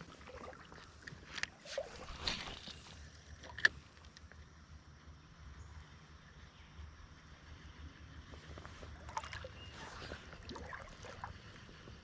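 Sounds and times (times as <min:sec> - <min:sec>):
river water sloshing: 0:00.0 - 0:03.9, 0:08.8 - 0:12.0
small clicks and splashes: 0:00.0 - 0:04.5, 0:08.6 - 0:12.0.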